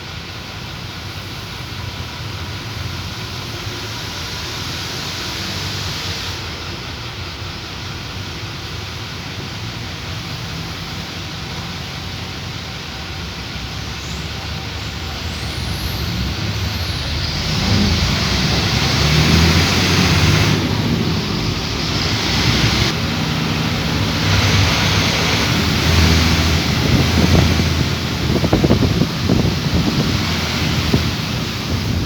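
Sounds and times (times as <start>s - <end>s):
tyres hissing on wet road: 0.0s - 32.0s
passing vehicle engines: 9.4s - 32.0s.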